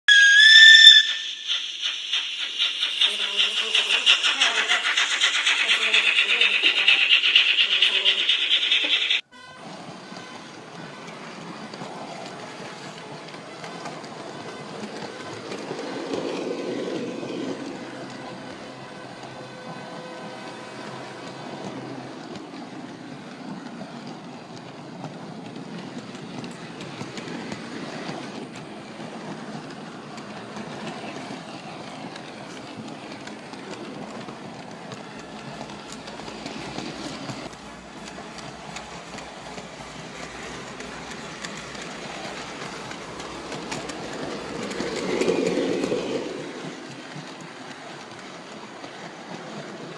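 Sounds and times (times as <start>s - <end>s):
miniature train running on track: 0.1s - 49.9s
wheels clicking over rail joints: 10.1s - 49.9s.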